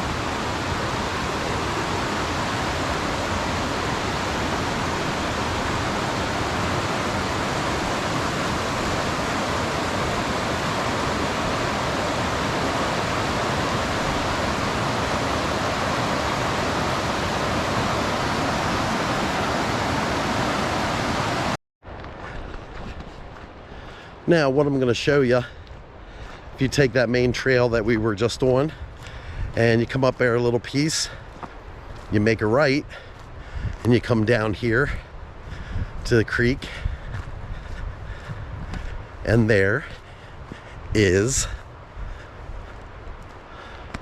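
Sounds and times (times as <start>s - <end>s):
creek water rushing: 0.0s - 26.9s.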